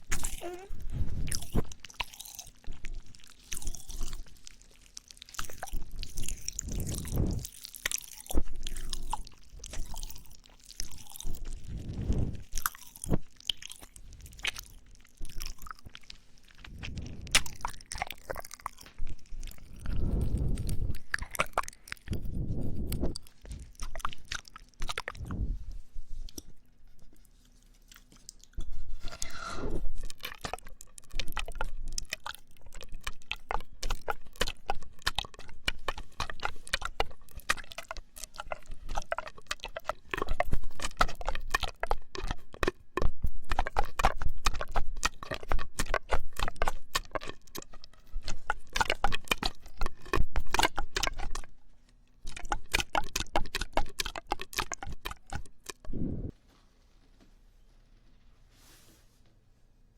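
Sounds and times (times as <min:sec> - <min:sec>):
gliding mouth sound: 0:00.0 - 0:04.3, 0:05.3 - 0:26.5, 0:28.6 - 0:41.2, 0:52.3 - 0:56.4
popping candy crackling in mouth: 0:00.0 - 0:25.3, 0:29.8 - 0:56.0.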